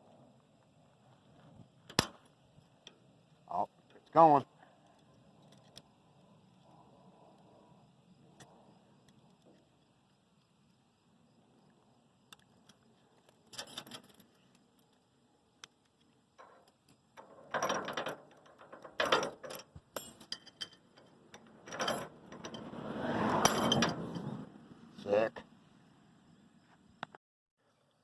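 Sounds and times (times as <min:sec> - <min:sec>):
chain and pliers clinking: 0:13.4 - 0:14.8, 0:16.4 - 0:22.8, 0:23.4 - 0:24.3.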